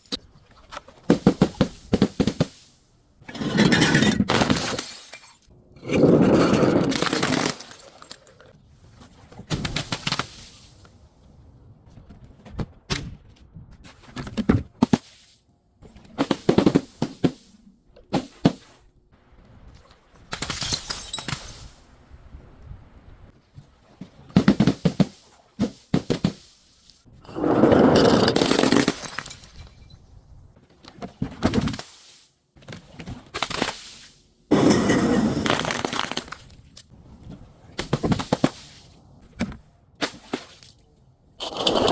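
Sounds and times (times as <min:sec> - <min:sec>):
brittle things being crushed: 0:35.4 - 0:36.8.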